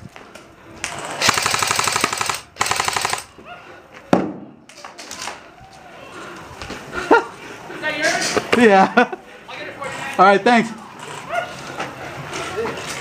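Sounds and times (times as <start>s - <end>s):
airsoft rifle automatic fire: 1.1s - 3.3s.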